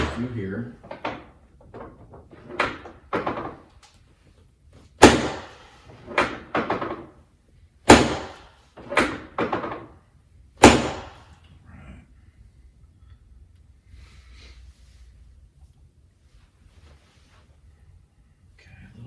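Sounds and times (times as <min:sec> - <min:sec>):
drop table slamming down: 0:00.0 - 0:00.2.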